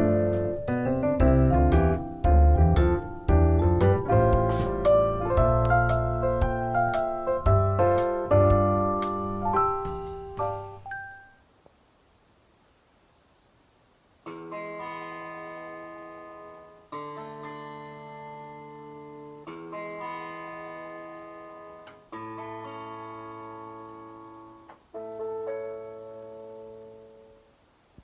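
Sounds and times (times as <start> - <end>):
slow instrumental chords: 0.0 - 11.2.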